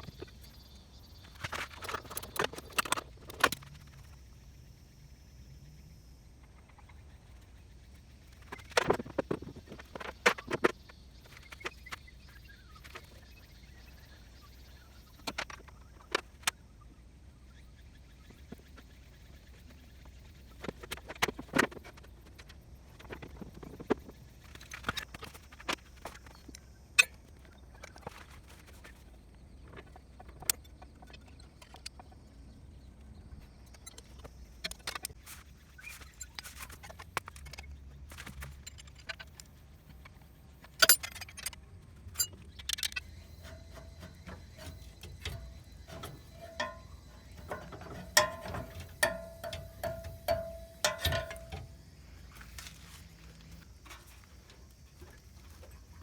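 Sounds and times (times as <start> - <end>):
low steady hum: 41.8 - 56.0
metallic clinks of tools: 42.2 - 51.8.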